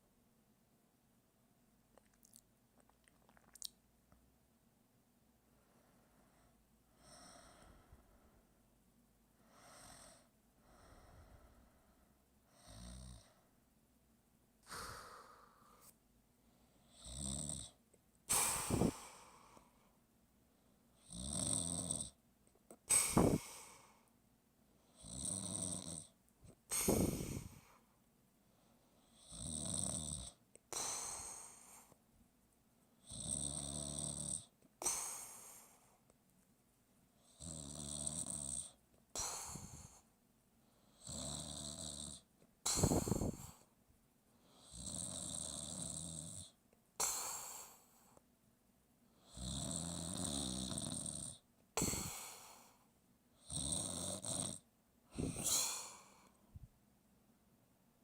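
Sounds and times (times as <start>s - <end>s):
person snoring: 12.6s - 13.4s, 14.6s - 15.9s, 16.8s - 19.7s, 21.0s - 22.2s, 22.8s - 24.1s, 25.0s - 27.8s, 29.1s - 32.0s, 33.0s - 35.8s, 37.3s - 40.0s, 40.9s - 43.7s, 44.5s - 47.9s, 49.2s - 52.8s, 53.4s - 56.4s.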